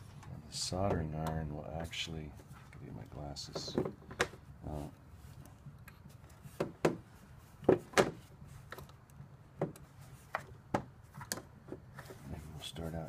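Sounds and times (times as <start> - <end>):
knocks and clicks of tools and plastic: 0.0 - 2.0, 3.4 - 4.5, 5.4 - 12.2.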